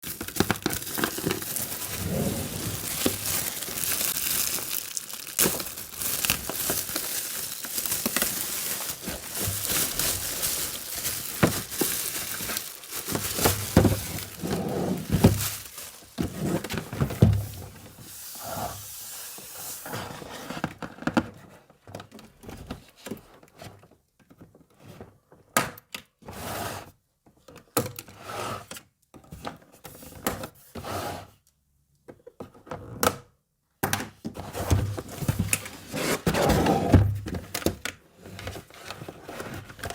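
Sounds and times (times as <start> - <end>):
packaging crinkling and tearing: 0.0 - 18.9.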